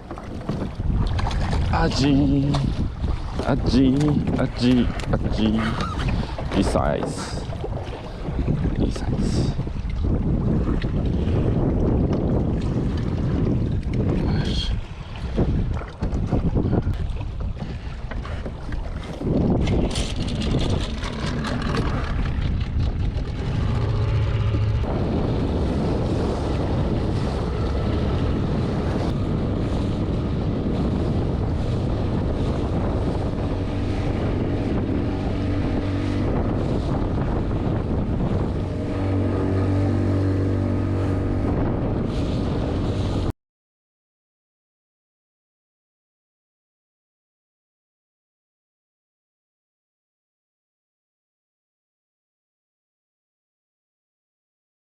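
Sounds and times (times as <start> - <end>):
outboard motor running: 0.0 - 43.3
wind buffeting microphone: 0.0 - 43.3.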